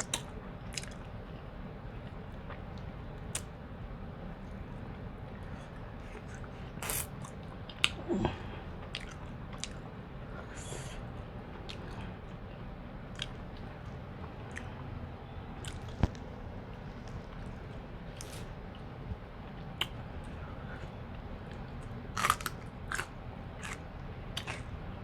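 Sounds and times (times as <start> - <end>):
chewing and biting: 0.0 - 1.1, 8.8 - 9.9, 13.1 - 13.7, 15.6 - 16.2, 21.5 - 24.8.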